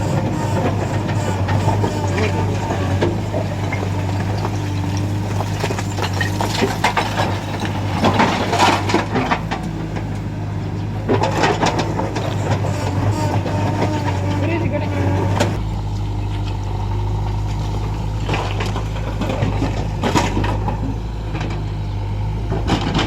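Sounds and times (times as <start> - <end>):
diesel engine running: 0.0 - 23.0
clattering stones: 0.4 - 10.1.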